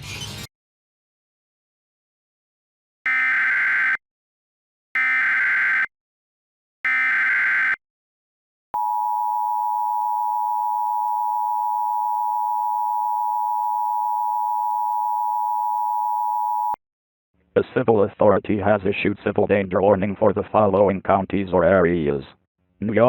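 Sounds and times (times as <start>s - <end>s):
two-tone attention signal: 8.8s - 16.8s.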